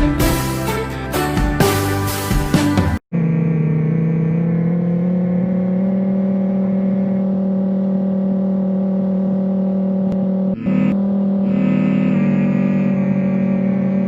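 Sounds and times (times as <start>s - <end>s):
warning siren steady tone: 3.1s - 9.6s, 10.2s - 14.0s.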